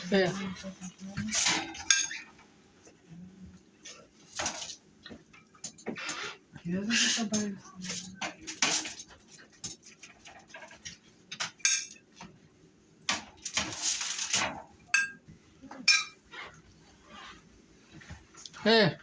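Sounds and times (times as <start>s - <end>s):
plates and cutlery clinking: 0.0s - 2.5s, 7.0s - 12.4s, 13.1s - 16.6s.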